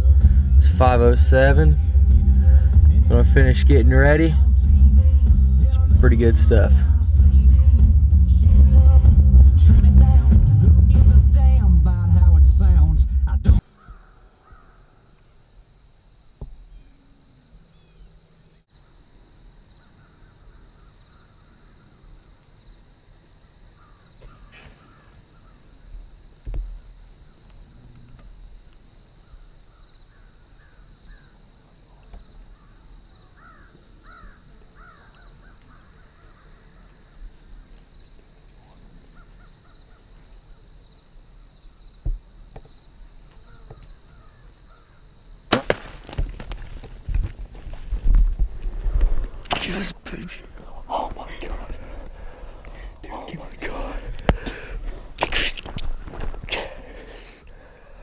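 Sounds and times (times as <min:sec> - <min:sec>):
insect chorus drone: 0:00.0 - 0:58.0.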